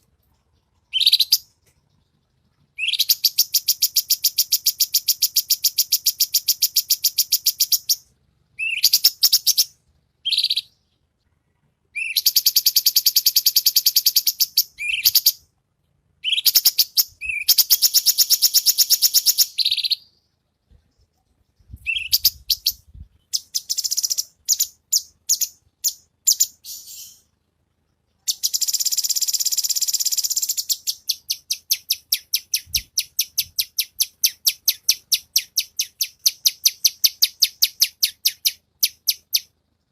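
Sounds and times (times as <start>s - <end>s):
bird singing rapid trills: 0.5s - 2.2s, 2.8s - 11.0s, 21.5s - 27.3s, 28.2s - 39.5s.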